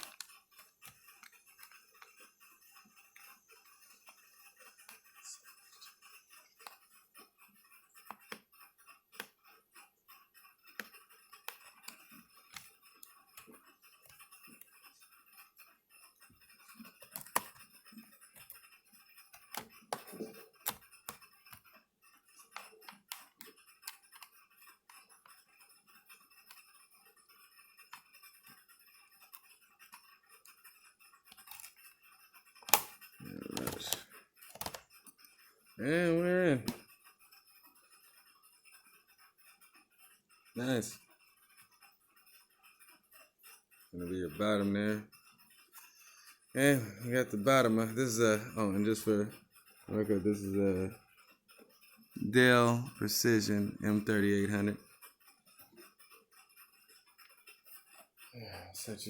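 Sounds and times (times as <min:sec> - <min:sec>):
screwdriver clicks and scrapes: 0:00.0 - 0:02.4, 0:10.7 - 0:15.0, 0:16.2 - 0:21.6, 0:22.4 - 0:25.0, 0:31.2 - 0:34.9.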